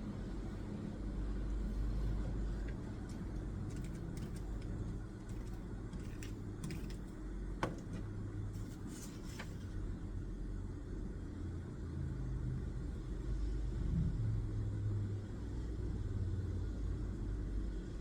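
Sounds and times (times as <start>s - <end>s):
low background rumble: 0.0s - 18.0s
desk work clicks and taps: 3.7s - 8.1s.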